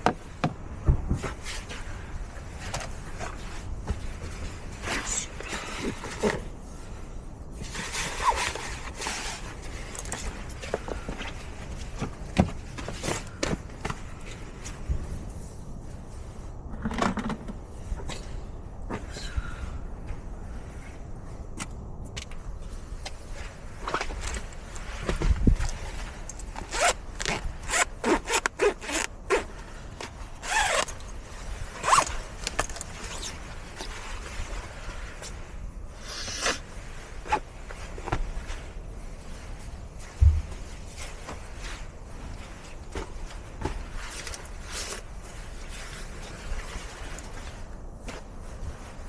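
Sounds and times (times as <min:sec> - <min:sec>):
camping gear rustling: 0:00.0 - 0:16.6, 0:20.0 - 0:49.0
zipper pulled: 0:04.8 - 0:06.4, 0:07.7 - 0:10.3, 0:26.5 - 0:31.1, 0:31.8 - 0:34.0, 0:36.0 - 0:36.6, 0:37.2 - 0:37.4, 0:44.0 - 0:45.0
low thump: 0:40.2 - 0:40.6.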